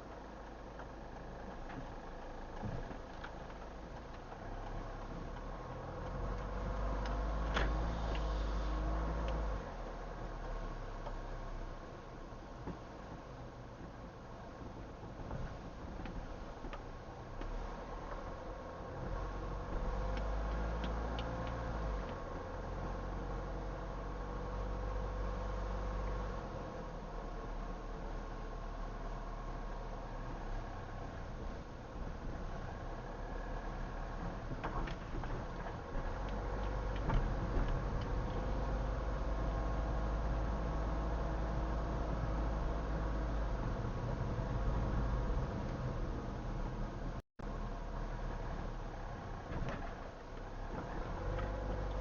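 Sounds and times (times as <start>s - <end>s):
engine and road rumble: 0.0s - 52.0s
light clicks or rattles: 19.8s - 23.0s.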